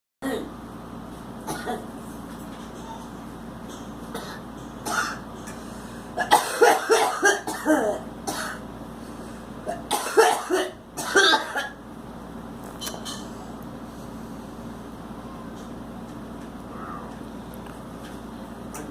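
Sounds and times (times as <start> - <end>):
faint steady hum: 0.2 - 18.9
girl coughing: 1.5 - 1.9, 6.2 - 8.6, 9.7 - 11.8.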